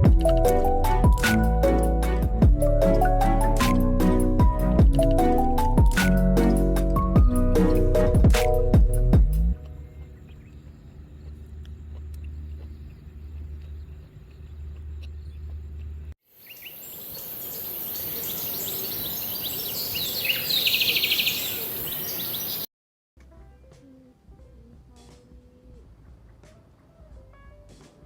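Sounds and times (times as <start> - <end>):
low hum: 0.0 - 16.1
high drone of insects: 16.4 - 22.6
birds chirping: 16.4 - 22.7.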